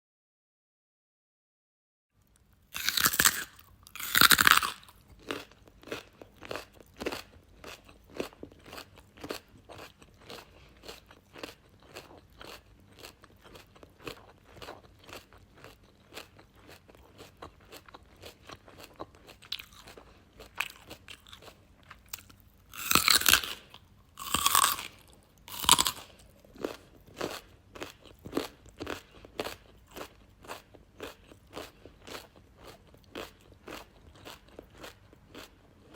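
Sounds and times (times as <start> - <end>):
crisp chewing crunches: 2.2 - 35.9
carrot bite crunches: 2.8 - 7.2, 22.1 - 23.6, 24.2 - 29.5.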